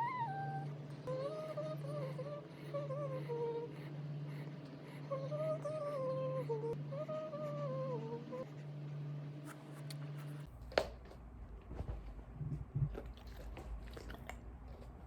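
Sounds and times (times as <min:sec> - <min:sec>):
dog whining: 0:00.0 - 0:04.4
steady low hum: 0:00.0 - 0:15.0.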